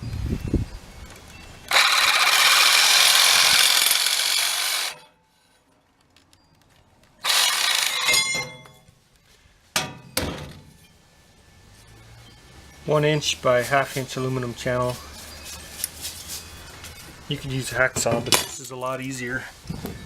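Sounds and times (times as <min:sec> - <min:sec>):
power saw cutting metal: 0:01.7 - 0:05.1, 0:07.2 - 0:08.5
metal ringing: 0:07.2 - 0:08.9, 0:09.8 - 0:11.1.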